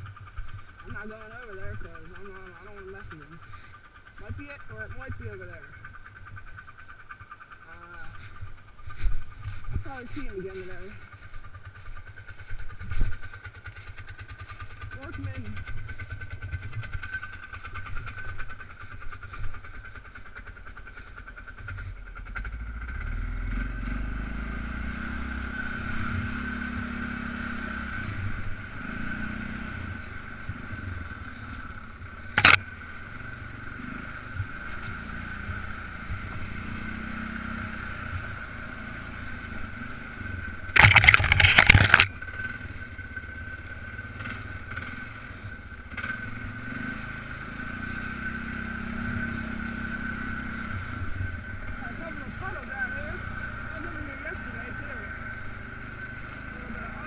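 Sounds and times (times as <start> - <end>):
atv engine running: 0.0 - 57.0
sharp crack: 32.3 - 32.7
rough rushing noise: 40.6 - 42.1.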